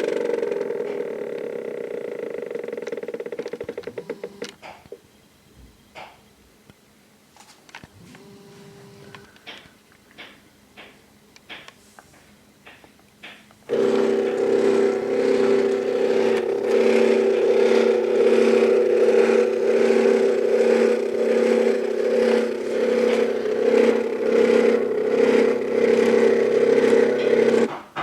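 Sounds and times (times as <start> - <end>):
stepper motor electric whine: 0.0 - 4.6, 8.0 - 9.3, 13.7 - 27.8.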